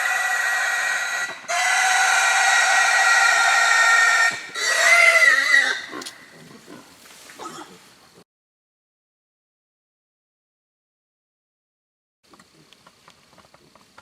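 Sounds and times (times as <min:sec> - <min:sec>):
wild hog squealing: 0:00.0 - 0:07.9.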